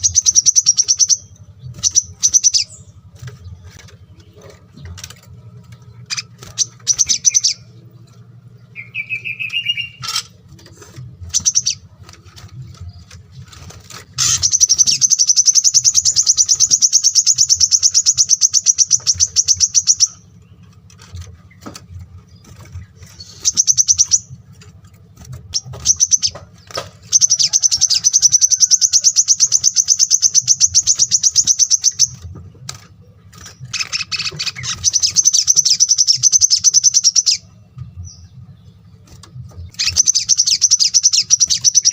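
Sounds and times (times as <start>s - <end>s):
songbirds chirping: 0.0s - 41.9s
fast high bird trills: 8.7s - 10.6s, 11.3s - 21.6s, 22.2s - 32.2s, 32.8s - 37.5s, 39.0s - 41.9s.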